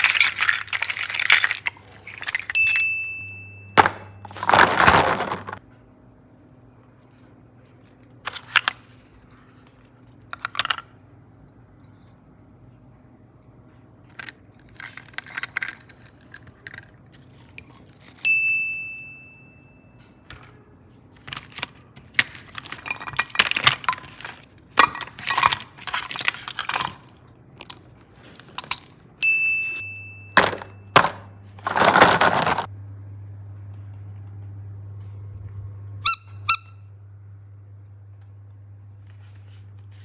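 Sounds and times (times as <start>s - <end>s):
bright ding: 18.3s - 19.9s, 29.2s - 30.8s.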